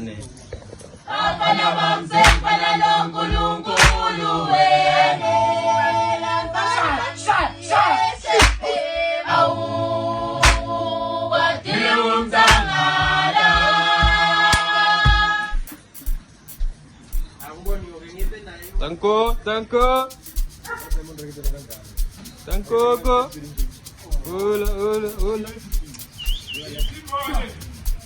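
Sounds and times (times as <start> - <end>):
voices singing in harmony: 1.1 - 15.4.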